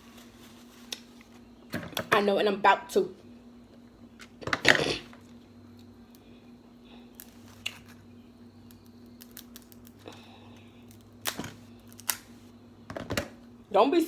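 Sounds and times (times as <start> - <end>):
faint steady hum: 0.0 - 14.0
crab legs cracking: 8.6 - 10.3, 10.9 - 12.4.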